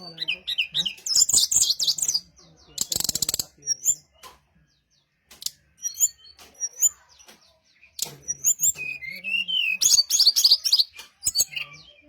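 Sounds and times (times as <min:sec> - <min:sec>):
bird high rising chirps: 0:05.6 - 0:12.0.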